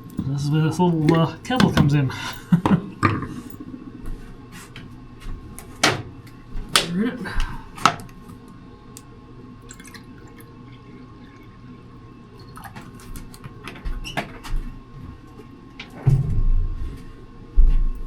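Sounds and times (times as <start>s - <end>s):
faint steady hum: 0.0s - 18.0s
water dripping: 9.0s - 11.6s.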